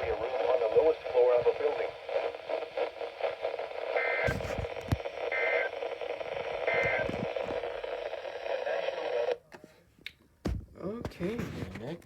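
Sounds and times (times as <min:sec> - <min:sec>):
radio static hiss: 0:00.0 - 0:09.4.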